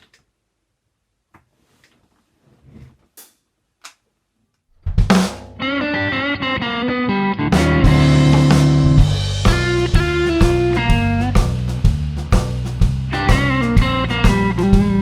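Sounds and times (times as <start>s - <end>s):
band playing blues shuffle: 5.1s - 15.0s.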